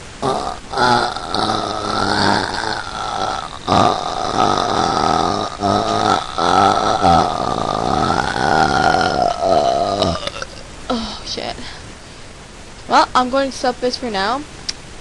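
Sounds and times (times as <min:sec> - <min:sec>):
girl burping: 0:00.2 - 0:11.2.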